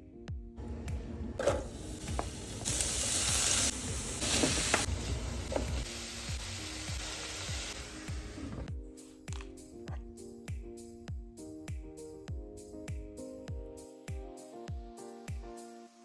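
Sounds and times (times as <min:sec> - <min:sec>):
background music with steady beat: 0:00.0 - 0:16.0
vegetables sizzling in a frying pan: 0:01.4 - 0:08.7.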